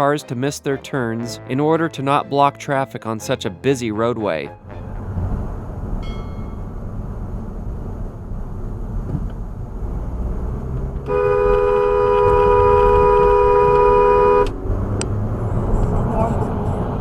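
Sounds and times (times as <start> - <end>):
car engine and road noise: 4.6 - 17.0
car horn blast: 11.1 - 14.6.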